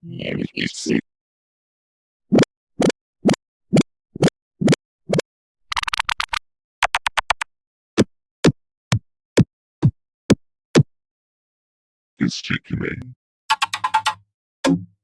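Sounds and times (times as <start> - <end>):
stutter of sharp clicks: 13.5 - 14.8.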